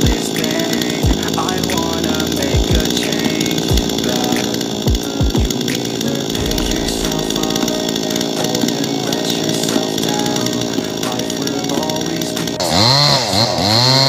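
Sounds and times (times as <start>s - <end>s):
chainsaw cutting: 0.0s - 14.0s
deep low thuds: 6.4s - 8.0s.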